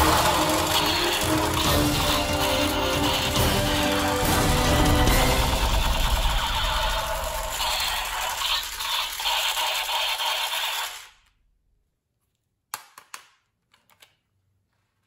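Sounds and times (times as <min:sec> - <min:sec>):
toy gun plastic clicks: 0:00.0 - 0:03.4, 0:07.5 - 0:11.4, 0:12.7 - 0:14.2
loud dense sound: 0:00.0 - 0:08.8.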